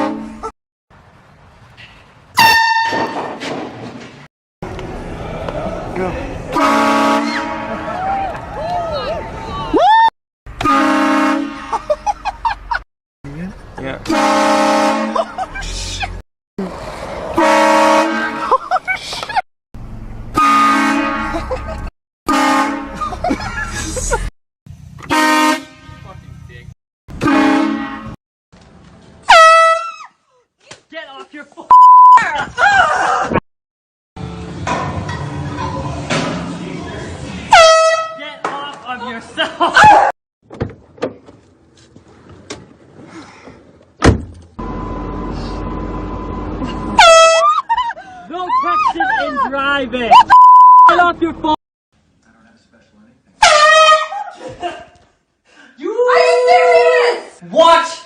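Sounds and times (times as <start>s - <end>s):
air horn blasts: 0.0s - 0.4s, 2.4s - 3.2s, 6.5s - 7.9s, 10.6s - 11.8s, 14.1s - 15.2s, 17.4s - 18.4s, 20.4s - 21.4s, 22.3s - 23.0s, 25.0s - 26.3s, 27.2s - 28.2s, 29.3s - 29.8s, 37.5s - 38.2s, 46.9s - 47.4s
loud thump: 2.8s - 4.2s, 44.0s - 44.4s
people yelping and shouting: 7.8s - 10.1s, 48.2s - 50.3s, 55.8s - 57.4s.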